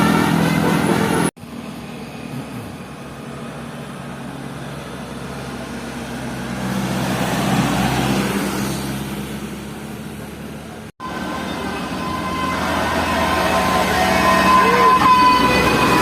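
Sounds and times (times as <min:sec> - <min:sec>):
steady high horn tone: 0:00.0 - 0:01.3, 0:11.0 - 0:16.0
bus engine hum: 0:00.0 - 0:16.0.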